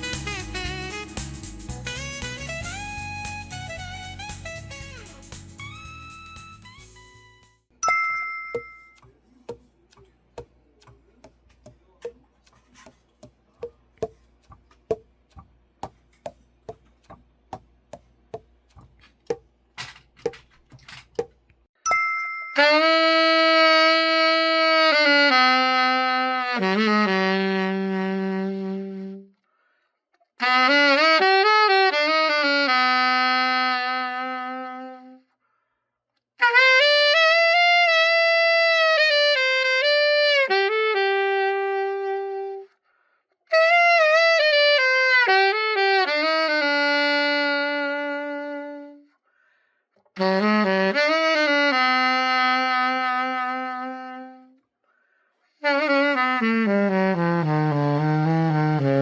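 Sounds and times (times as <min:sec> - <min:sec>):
alto saxophone melody: 0:00.0 - 0:07.2, 0:22.6 - 0:29.4, 0:30.4 - 0:35.3, 0:36.4 - 0:42.8, 0:43.5 - 0:49.1, 0:50.2 - 0:54.6, 0:55.6 - 0:59.0.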